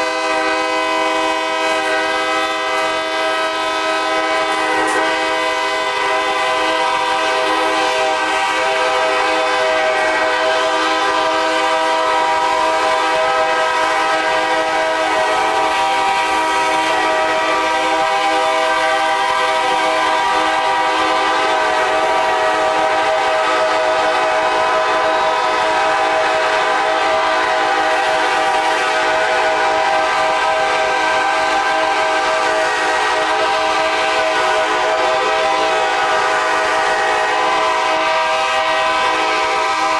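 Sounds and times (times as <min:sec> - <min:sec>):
train air horn chord: 0:00.0 - 0:39.9.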